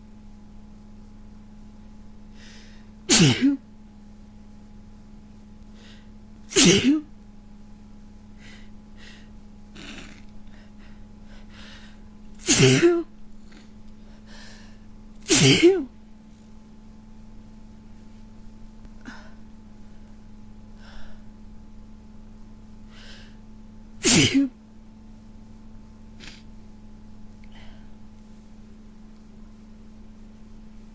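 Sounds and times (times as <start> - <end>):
steady low hum: 0.0 - 30.9
faint breaths drawn in: 2.3 - 3.0, 5.7 - 6.2, 8.3 - 12.2
person sneezing: 3.1 - 3.6, 6.5 - 7.1, 12.4 - 13.8, 15.2 - 15.9, 24.0 - 24.6, 26.2 - 26.5.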